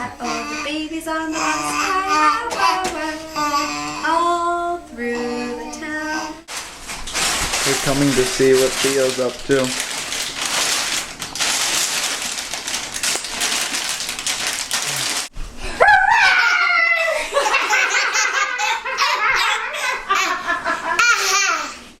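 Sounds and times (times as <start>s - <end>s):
even rustling noise: 6.5s - 15.6s
baby squealing and laughing: 15.8s - 17.2s.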